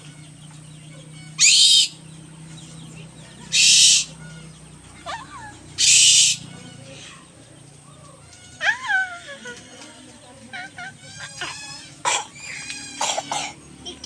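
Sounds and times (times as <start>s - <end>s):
faint chirping calls: 0.0s - 14.0s
owl hissing screeches: 1.4s - 2.0s, 3.5s - 4.1s, 5.8s - 6.4s.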